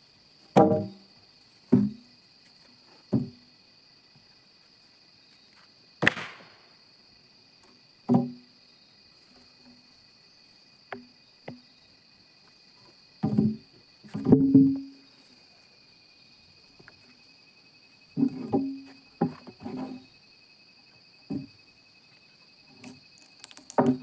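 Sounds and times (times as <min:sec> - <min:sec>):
insects buzzing: 0:00.0 - 0:24.0
wood knocking against wood: 0:00.6 - 0:01.0, 0:01.7 - 0:02.0, 0:03.1 - 0:03.4, 0:08.1 - 0:08.4.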